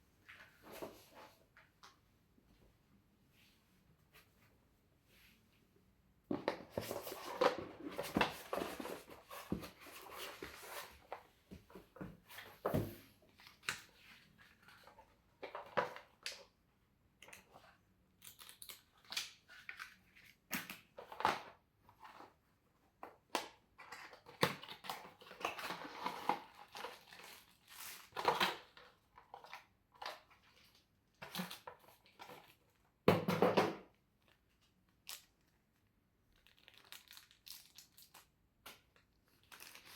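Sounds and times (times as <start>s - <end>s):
packaging crinkling and tearing: 18.2s - 20.0s, 36.3s - 39.9s.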